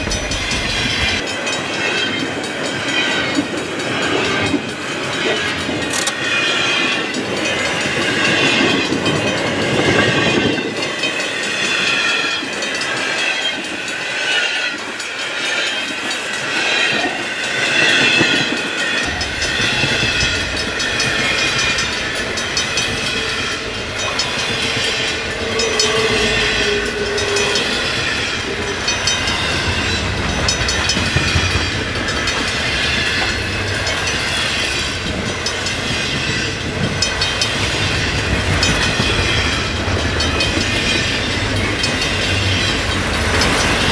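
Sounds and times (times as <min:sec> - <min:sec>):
train wheels rumbling on rails: 0:00.0 - 0:43.9
high metallic wheel squealing: 0:15.5 - 0:43.9.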